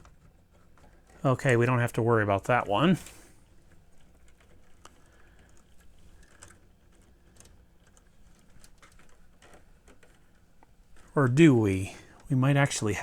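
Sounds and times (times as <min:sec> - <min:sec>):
small clicks of parts: 0:00.0 - 0:01.3, 0:03.0 - 0:11.2
wires rustling: 0:00.0 - 0:13.0.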